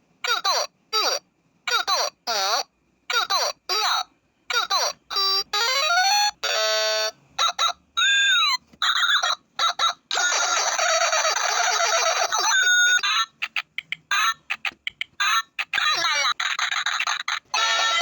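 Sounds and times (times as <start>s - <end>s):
electronic toy beeps: 4.8s - 18.0s.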